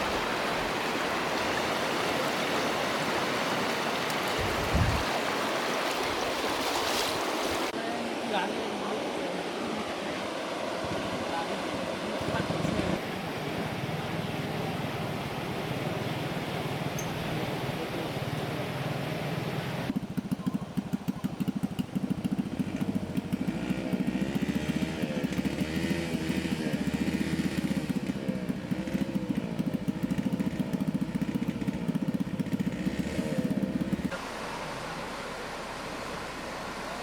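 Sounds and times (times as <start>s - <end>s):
small engine running: 12.3s - 37.0s.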